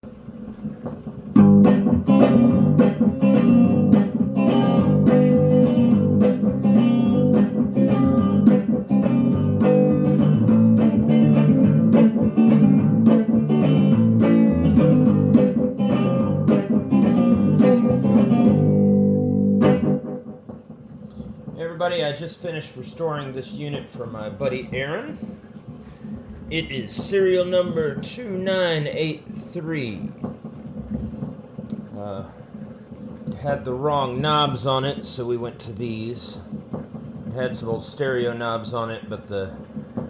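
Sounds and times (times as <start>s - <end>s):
electric guitar playing: 0.8s - 21.6s.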